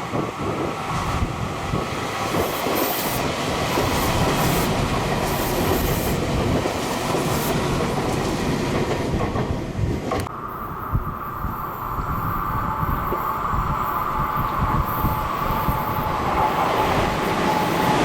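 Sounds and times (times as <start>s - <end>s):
electric train passing: 0.0s - 18.0s.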